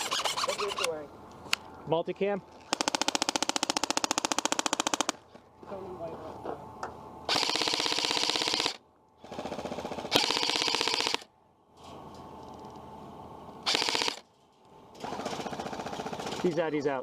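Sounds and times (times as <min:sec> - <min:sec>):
airsoft rifle firing full auto: 0:07.3 - 0:11.3, 0:13.6 - 0:14.2, 0:15.0 - 0:16.6.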